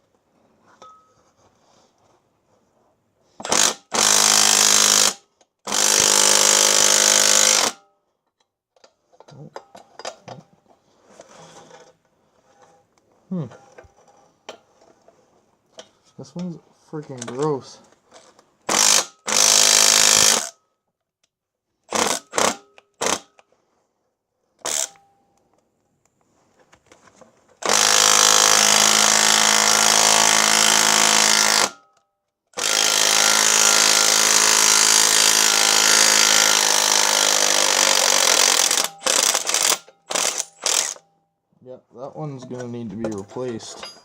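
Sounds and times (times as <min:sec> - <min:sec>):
impact wrench hammering: 0:27.6 - 0:31.8, 0:32.6 - 0:41.0.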